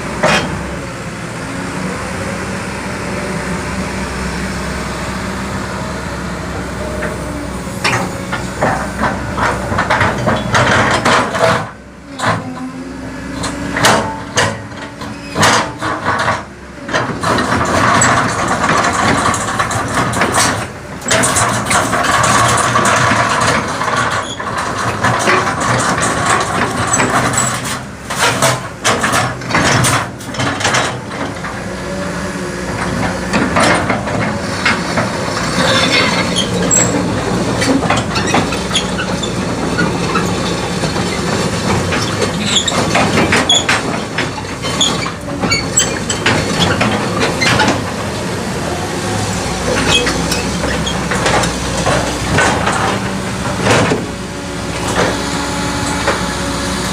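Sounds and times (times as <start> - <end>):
excavator diesel engine running: 0.0 - 56.9
metallic clanks and knocks: 7.8 - 12.6, 13.4 - 31.6, 32.7 - 48.3, 49.3 - 54.1.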